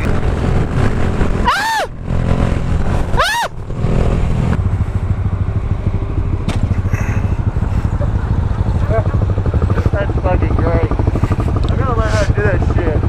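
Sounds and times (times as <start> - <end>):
motorcycle engines running: 0.0 - 13.0
high squeals: 1.4 - 2.0, 3.2 - 3.6.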